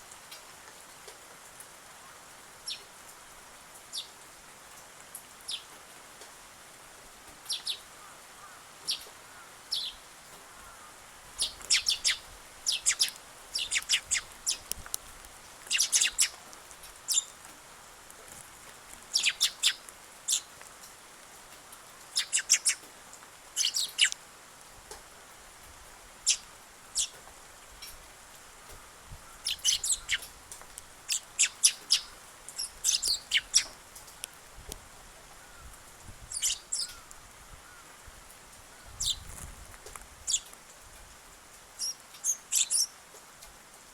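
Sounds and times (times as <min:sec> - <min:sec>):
sparrows chirping: 0:07.4 - 0:10.0, 0:10.6 - 0:14.8, 0:15.6 - 0:16.4, 0:17.0 - 0:17.4, 0:19.1 - 0:20.5, 0:22.1 - 0:22.9, 0:23.6 - 0:24.2, 0:26.2 - 0:27.2, 0:29.3 - 0:30.3, 0:31.1 - 0:33.8, 0:36.3 - 0:37.1, 0:38.9 - 0:39.4, 0:40.2 - 0:40.5, 0:41.8 - 0:42.9.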